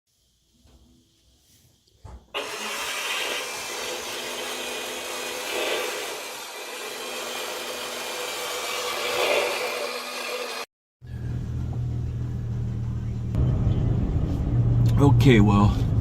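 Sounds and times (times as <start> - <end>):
engine and road noise drone: 11.1 - 16.0.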